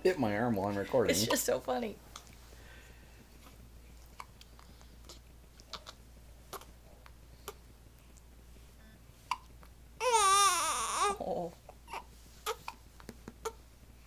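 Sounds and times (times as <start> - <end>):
baby hiccuping: 5.7 - 6.7.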